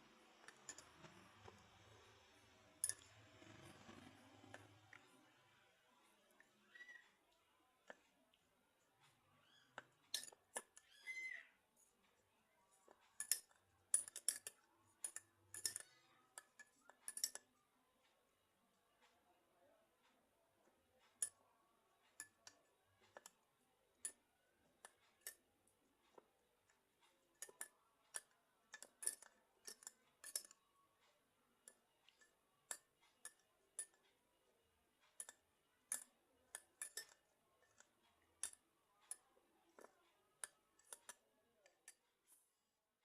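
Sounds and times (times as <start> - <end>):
light sharp clicks and taps: 35.0 - 42.4.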